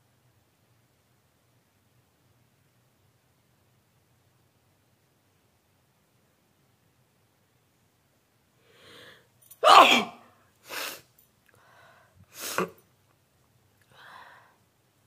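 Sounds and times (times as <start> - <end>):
faint breathy sounds: 8.5 - 9.6, 10.6 - 12.8, 13.8 - 14.9
woman sneezing loudly: 9.6 - 11.0, 12.4 - 12.8.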